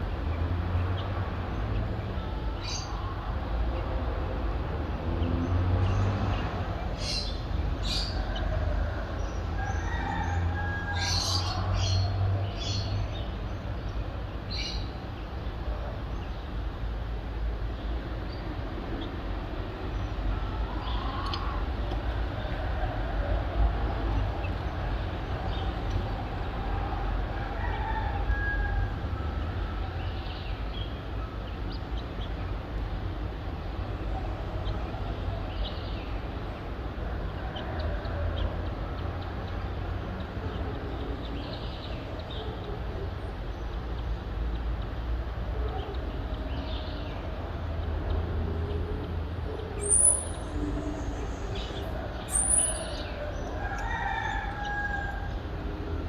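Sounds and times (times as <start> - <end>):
distant city traffic rumble: 0.0 - 56.0
distant roosters crowing: 7.8 - 12.8, 25.3 - 30.4, 49.8 - 56.0
high-pitched bird calls: 49.6 - 53.9.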